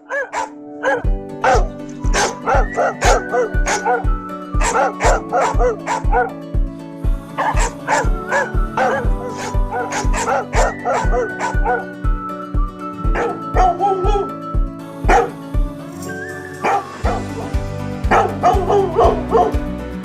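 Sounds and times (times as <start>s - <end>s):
dog barking and yipping: 0.0s - 6.3s, 7.4s - 11.9s, 13.1s - 14.3s, 15.1s - 15.4s, 16.6s - 17.5s, 18.1s - 19.6s
electronic music: 0.7s - 20.0s.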